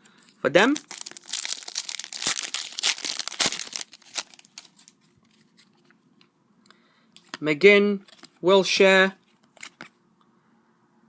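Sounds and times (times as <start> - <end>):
card pack wrapper crinkling and tearing: 0.6 - 5.0.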